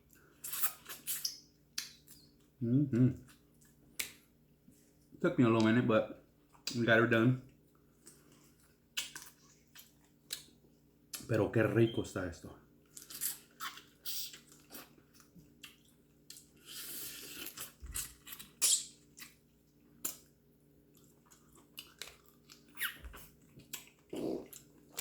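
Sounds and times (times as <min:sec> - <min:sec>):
wet chewing: 0:08.0 - 0:11.3, 0:12.8 - 0:19.4, 0:20.9 - 0:25.0
lip smacks: 0:08.9 - 0:10.5, 0:13.0 - 0:19.4
small mouth clicks: 0:13.6 - 0:14.8.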